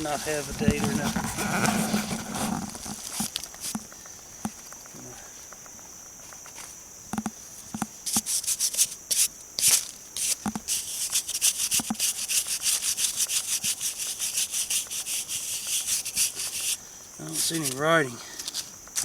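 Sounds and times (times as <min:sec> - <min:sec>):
rubbing strokes on stone: 0:00.0 - 0:03.8, 0:08.0 - 0:19.0.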